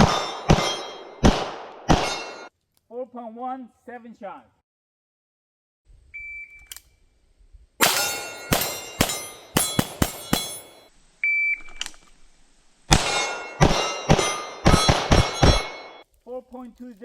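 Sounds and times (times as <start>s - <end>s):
bullets clanging on steel targets: 0.0s - 1.2s, 1.9s - 2.5s, 7.8s - 10.9s, 12.9s - 16.0s
pistol shots: 0.0s - 2.5s, 7.8s - 10.8s, 12.9s - 16.0s.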